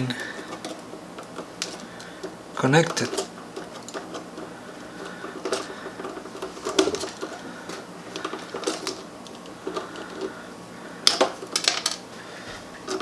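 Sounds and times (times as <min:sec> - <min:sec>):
clicks and scrapes of wires: 0:00.1 - 0:10.4.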